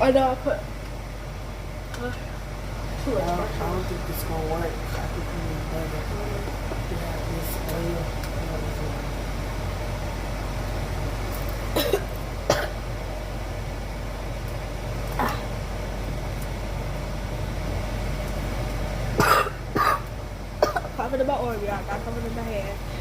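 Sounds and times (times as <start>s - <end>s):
kitchen background hum: 0.0s - 23.0s
cough-like sound: 11.8s - 12.8s, 15.2s - 15.5s, 19.2s - 20.9s.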